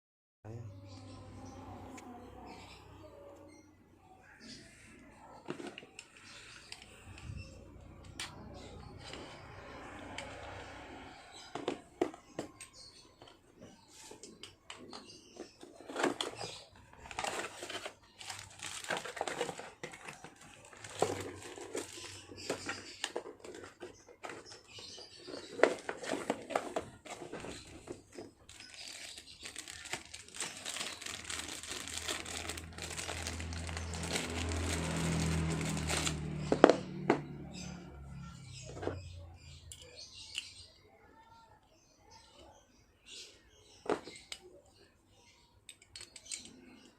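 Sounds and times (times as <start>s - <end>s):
crinkling and rustling handling: 4.7s - 37.1s.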